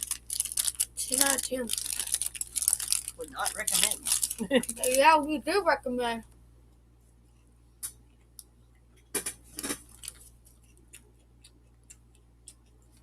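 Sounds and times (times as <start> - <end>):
snack packaging crinkling: 0.0 - 5.0, 9.6 - 12.7.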